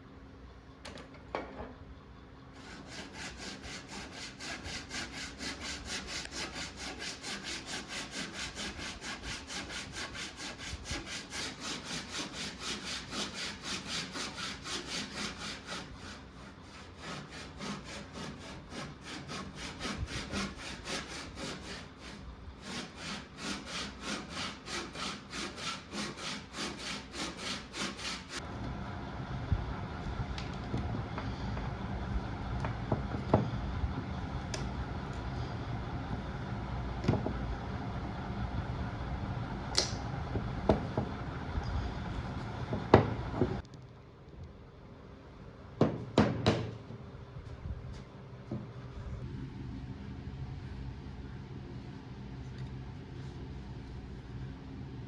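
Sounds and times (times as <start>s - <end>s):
hand saw cutting wood: 2.6s - 28.4s.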